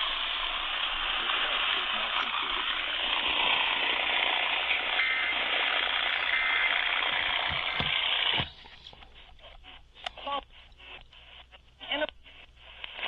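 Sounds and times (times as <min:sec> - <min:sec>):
radio static hiss: 0:00.0 - 0:13.0
faint voice: 0:11.8 - 0:12.3.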